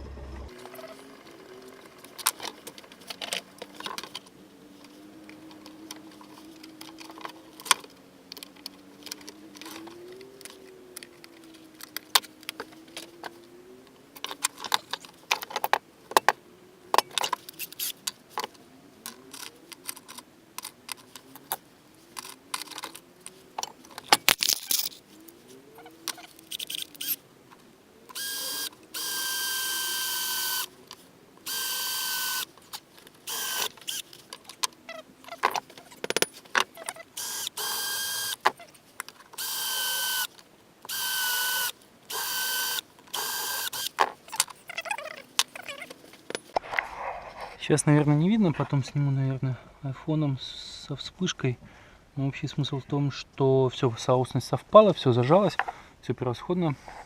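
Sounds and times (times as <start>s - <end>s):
small power tool whining: 28.1s - 30.7s, 31.4s - 32.5s, 33.2s - 34.1s, 37.0s - 38.6s, 39.4s - 44.0s.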